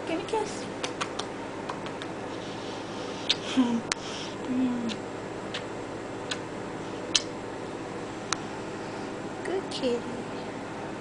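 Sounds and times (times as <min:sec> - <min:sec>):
low electrical hum: 0:00.0 - 0:11.0
low murmured hums: 0:00.0 - 0:11.0
lip-smack kisses: 0:00.8 - 0:02.2, 0:03.2 - 0:04.1, 0:04.8 - 0:06.5, 0:07.1 - 0:07.4.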